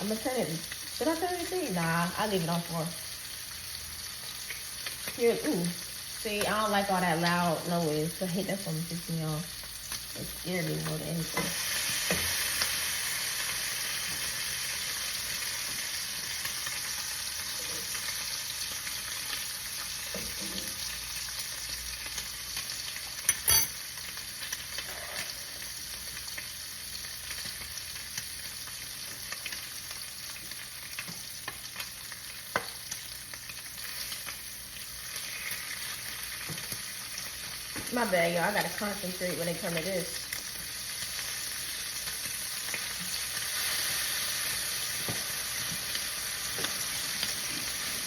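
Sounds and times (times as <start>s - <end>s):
bacon sizzling in a pan: 0.0s - 48.0s.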